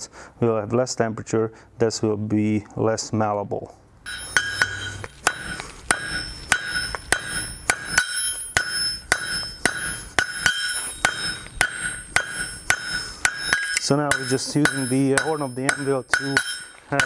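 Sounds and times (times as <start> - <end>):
hammer striking steel on anvil: 4.1 - 17.0.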